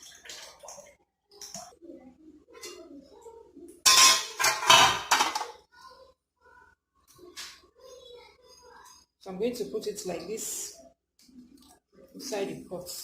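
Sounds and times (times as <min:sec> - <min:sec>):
utensils clinking on cookware: 0:03.8 - 0:05.6.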